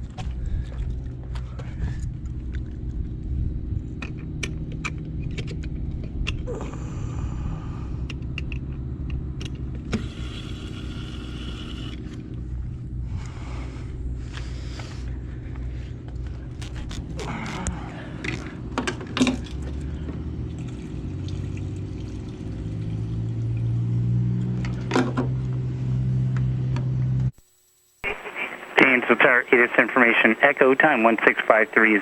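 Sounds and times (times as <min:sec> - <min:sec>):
piston engine idling: 0:05.8 - 0:20.9.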